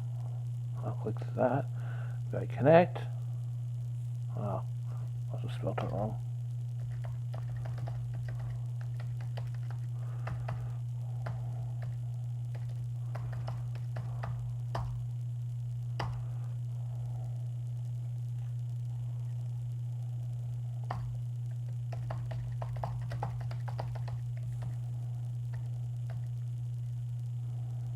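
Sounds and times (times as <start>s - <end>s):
steady low hum: 0.0s - 27.9s
keyboard key clicks: 6.8s - 10.6s, 21.9s - 24.8s.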